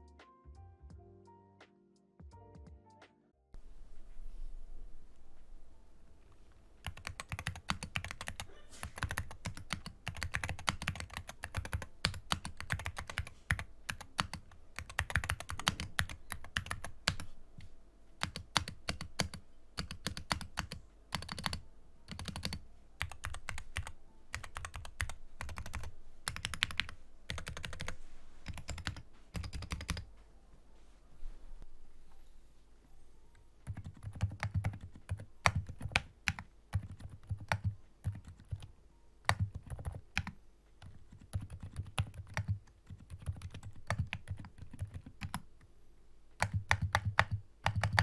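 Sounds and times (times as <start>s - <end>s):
keyboard typing: 6.8s - 17.4s, 18.2s - 30.1s, 33.6s - 45.7s, 46.4s - 48.0s.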